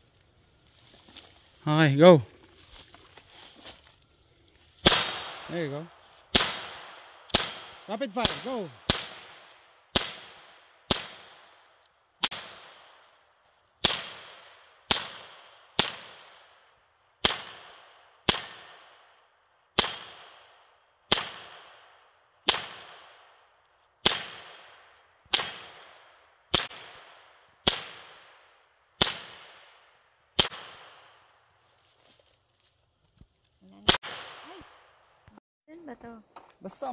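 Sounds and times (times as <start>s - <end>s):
gunshots with ringing echo: 4.8s - 5.7s, 6.3s - 11.6s, 12.2s - 13.0s, 13.8s - 16.6s, 17.2s - 19.0s, 21.1s - 23.3s, 24.0s - 31.1s, 33.9s - 35.0s.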